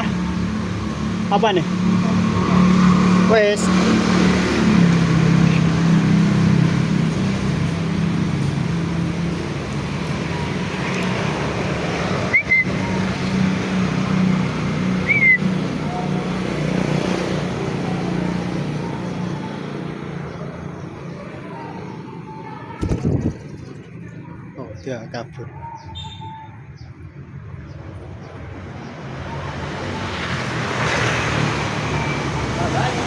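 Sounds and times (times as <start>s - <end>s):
vehicle engine humming: 0.0s - 25.5s.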